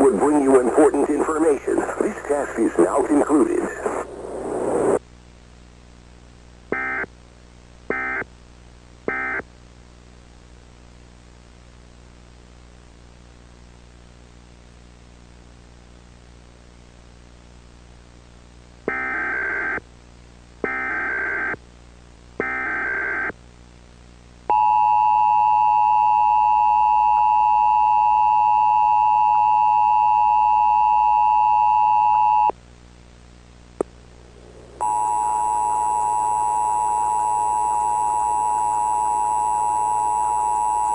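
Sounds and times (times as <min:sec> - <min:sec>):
faint hiss: 0:00.0 - 0:05.0
dense loud tone: 0:33.8 - 0:38.2
two-tone attention signal: 0:34.8 - 0:40.9.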